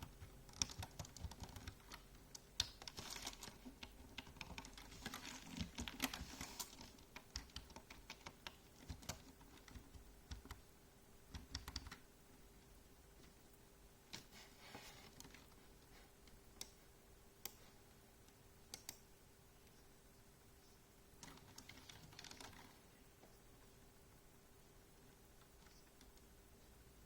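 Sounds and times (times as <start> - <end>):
keyboard typing clicks: 0.0 - 10.6, 11.3 - 12.0, 18.7 - 19.0.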